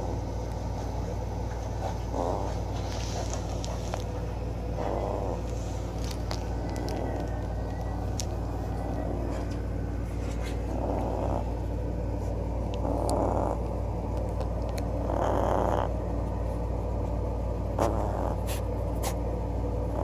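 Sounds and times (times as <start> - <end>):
small dog snoring: 1.8 - 4.1, 4.8 - 9.6, 10.2 - 13.8, 14.8 - 16.0, 17.7 - 19.2.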